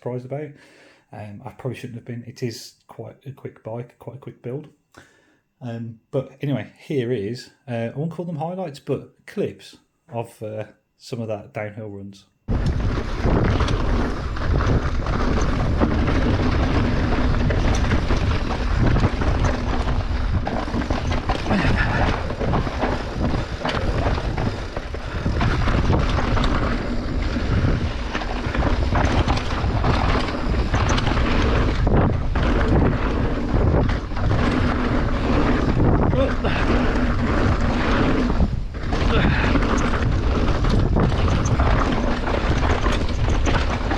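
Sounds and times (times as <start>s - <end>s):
bike clattering over rocks: 12.5s - 43.9s
tyres roaring on rough dirt: 12.5s - 43.9s
wind buffeting microphone: 12.5s - 43.9s.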